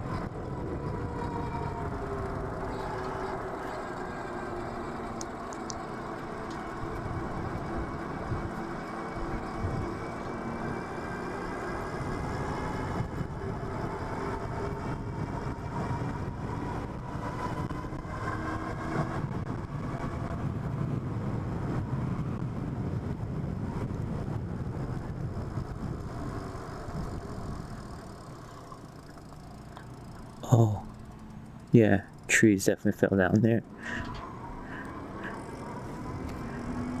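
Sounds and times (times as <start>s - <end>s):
faint motor whine: 0.0s - 37.0s
wind noise: 5.6s - 28.1s.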